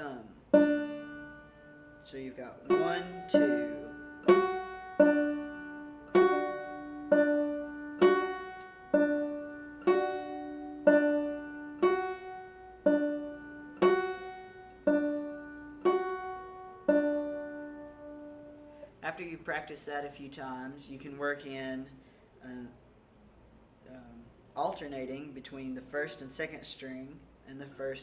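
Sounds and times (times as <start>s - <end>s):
banjo single notes: 0.0s - 19.0s.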